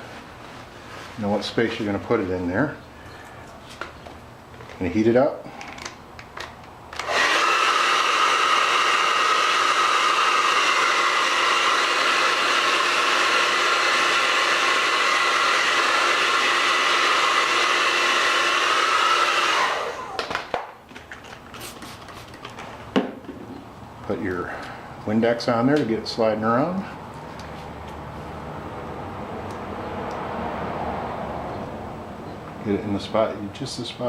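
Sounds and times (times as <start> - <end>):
hair dryer blowing: 7.0 - 20.6.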